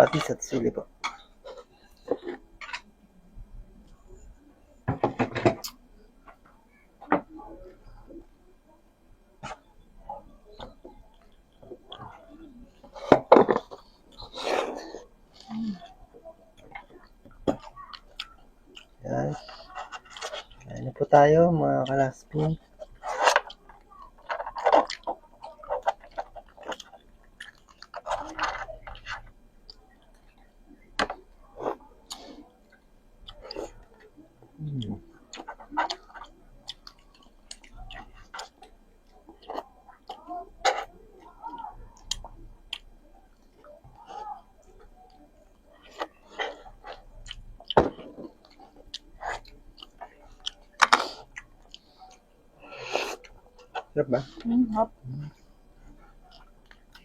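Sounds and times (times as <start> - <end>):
person chewing and crunching food: 9.4 - 57.0
chewing and biting food: 22.6 - 30.5, 45.8 - 52.2.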